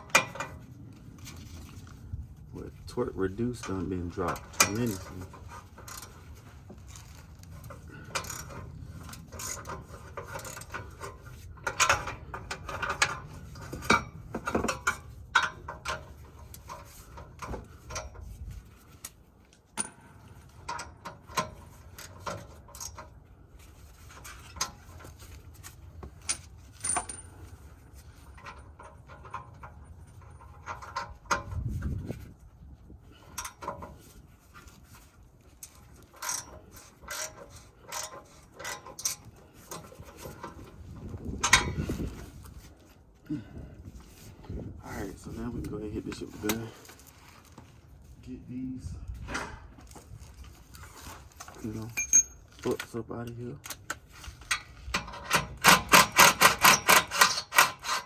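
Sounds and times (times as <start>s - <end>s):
metal tools clinking: 2.8s - 18.3s, 24.1s - 32.2s, 35.5s - 42.8s, 49.3s - 58.0s.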